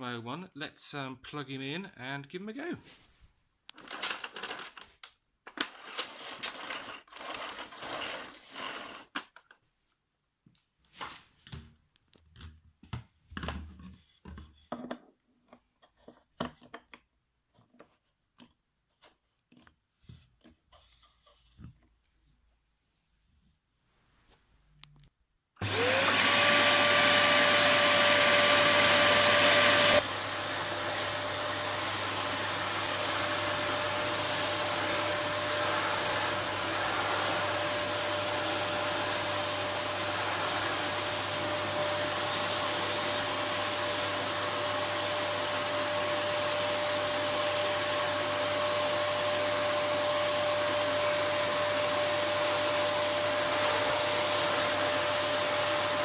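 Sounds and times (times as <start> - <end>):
vacuum cleaner motor whine: 25.6 - 56.0.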